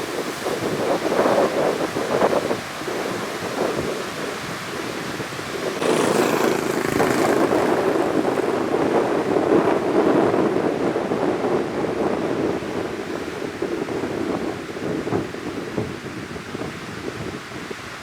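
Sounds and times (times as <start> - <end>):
wind buffeting microphone: 5.7 - 17.7
surf breaking and rushing: 5.8 - 8.5.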